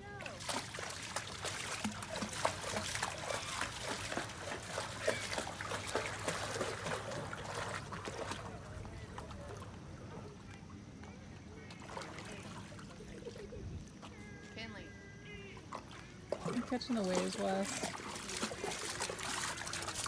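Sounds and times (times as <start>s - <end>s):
dog splashing in water: 0.0s - 10.5s, 11.7s - 13.5s, 15.7s - 20.0s
trickling drips: 0.2s - 10.6s, 15.7s - 20.0s.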